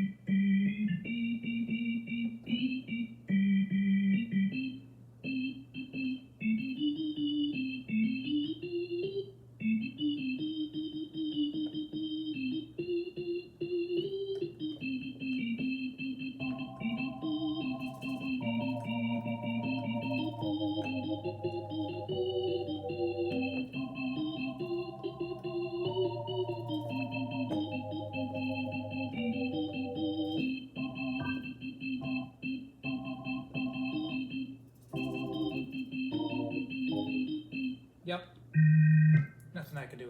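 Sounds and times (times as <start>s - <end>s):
organ chords: 0.0s - 39.5s
held organ bass note: 9.8s - 34.4s, 35.0s - 37.8s.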